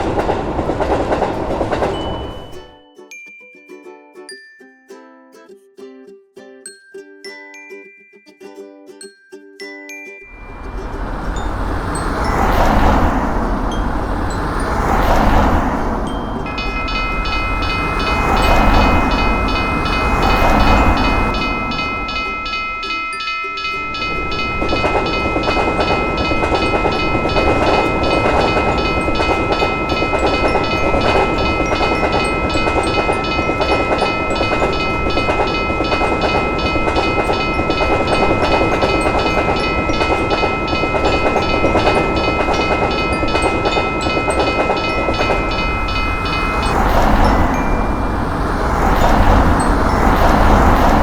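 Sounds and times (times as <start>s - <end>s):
train wheels clattering on rails: 0.0s - 2.7s, 10.3s - 51.0s
crossing warning bell ringing: 0.0s - 2.8s, 10.2s - 51.0s.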